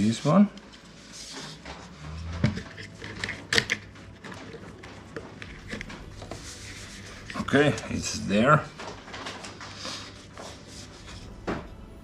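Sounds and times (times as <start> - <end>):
plastic parts clicking and knocking: 2.4 - 6.1.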